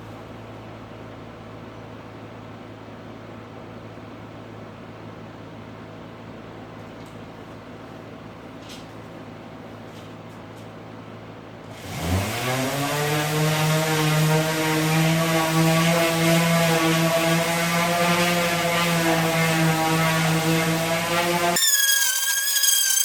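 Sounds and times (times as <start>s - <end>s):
electric motor spinning up: 11.7s - 23.0s.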